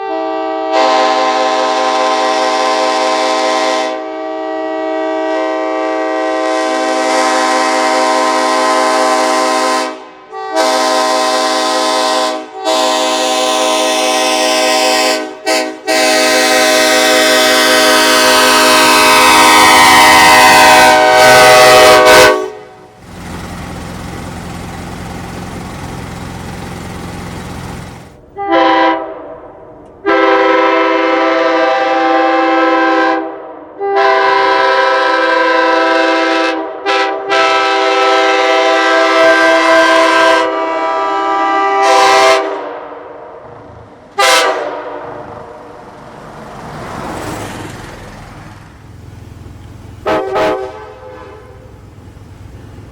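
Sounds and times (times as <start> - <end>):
horn toots: 0.0 - 22.9, 27.9 - 29.4, 30.0 - 43.0, 44.2 - 47.2, 50.0 - 51.8
train horn chord blasts: 0.0 - 22.9, 28.3 - 43.2, 44.2 - 45.8, 50.0 - 51.8.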